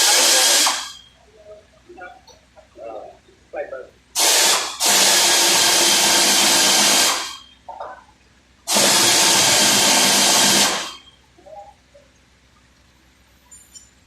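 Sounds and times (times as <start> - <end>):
compressed air hissing: 0.0 - 1.0, 4.2 - 7.5, 8.7 - 11.0.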